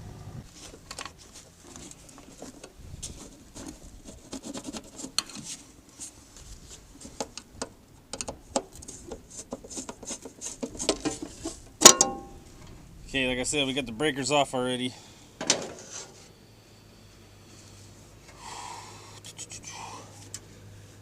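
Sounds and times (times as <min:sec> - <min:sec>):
faint low rumble: 0:00.0 - 0:03.3.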